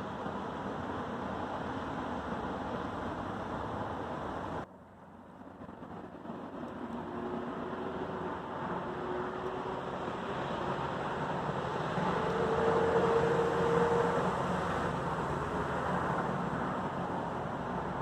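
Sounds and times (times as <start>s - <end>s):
road traffic rush: 0.0s - 18.0s
vehicle passing by: 7.2s - 17.8s.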